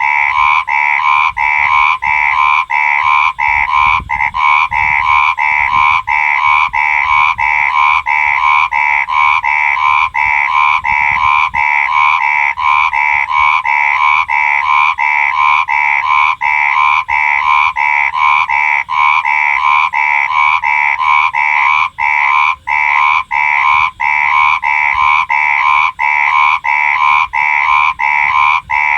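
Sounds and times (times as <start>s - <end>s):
frog croaking: 0.0s - 28.9s.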